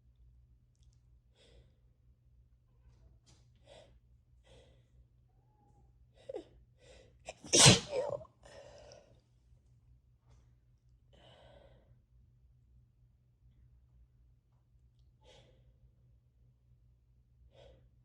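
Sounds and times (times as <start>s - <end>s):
person sneezing: 7.3s - 8.3s.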